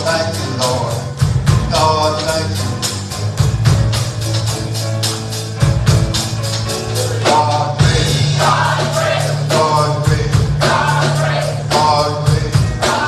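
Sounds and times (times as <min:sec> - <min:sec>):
singing voices: 0:00.0 - 0:02.8, 0:06.8 - 0:13.0
percussion beat and bass: 0:00.0 - 0:13.0.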